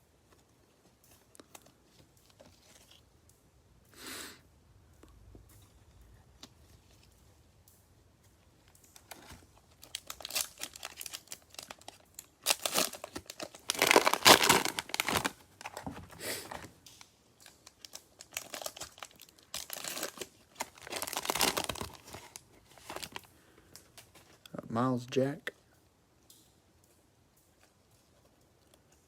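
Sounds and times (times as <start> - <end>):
cellophane wrapper crinkling and tearing: 0.3 - 3.1, 8.6 - 24.6.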